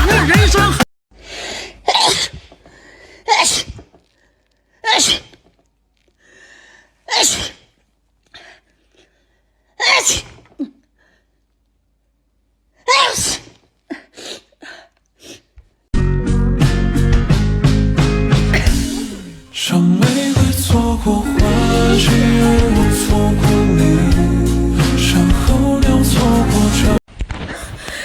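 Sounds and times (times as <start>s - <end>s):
music: 0.0s - 0.8s, 16.0s - 27.0s
woman sneezing: 1.8s - 2.4s, 3.3s - 3.8s, 4.8s - 5.4s, 7.1s - 7.7s, 9.8s - 10.8s, 12.9s - 14.5s, 18.5s - 19.4s.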